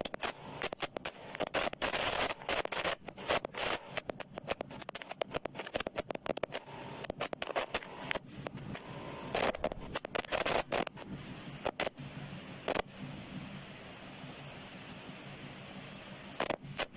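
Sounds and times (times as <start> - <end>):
tape rewinding chatter: 0.0 - 13.1
steady high whine: 0.0 - 16.9.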